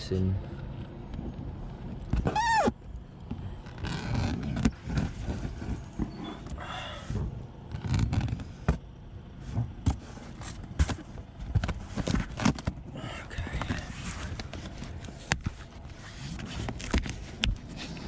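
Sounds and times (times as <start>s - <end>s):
cardboard scraping and rustling: 3.7s - 6.5s, 9.4s - 12.8s, 13.6s - 18.0s.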